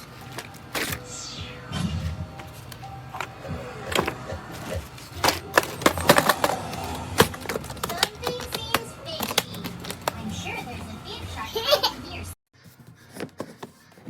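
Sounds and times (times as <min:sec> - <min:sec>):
small hard objects clattering: 0:03.9 - 0:10.5.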